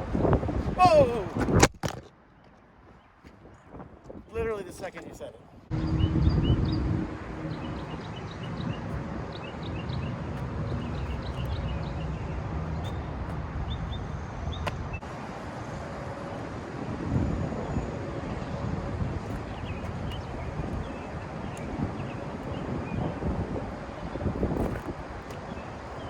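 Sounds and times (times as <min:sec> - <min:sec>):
wind on microphone: 0:00.0 - 0:02.1, 0:03.0 - 0:26.0
steady low rumble: 0:05.6 - 0:26.0
small birds chirping: 0:05.8 - 0:15.0.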